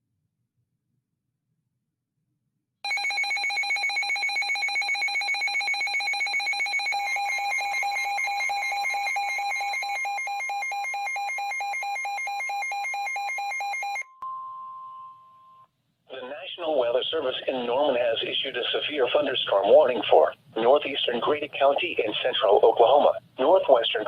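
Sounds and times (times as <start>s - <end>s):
rapidly pulsing alarm beeping: 2.9s - 14.0s
steady alarm tone: 2.9s - 14.1s.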